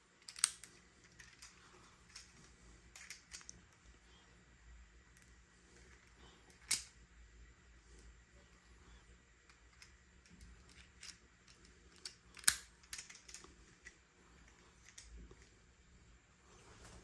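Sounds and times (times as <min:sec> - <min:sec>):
plastic clicks and snaps: 0:00.2 - 0:00.7, 0:12.0 - 0:14.0.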